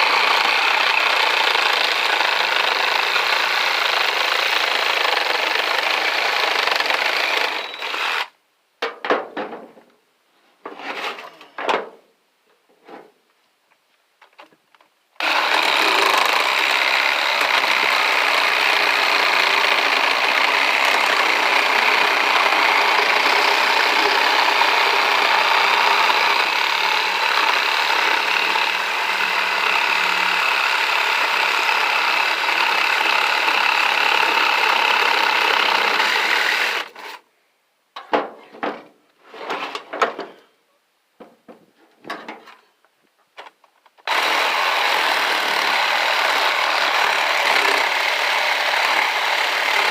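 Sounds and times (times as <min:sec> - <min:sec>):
power tool cutting metal: 0:00.0 - 0:08.3, 0:15.2 - 0:37.2, 0:44.1 - 0:49.9.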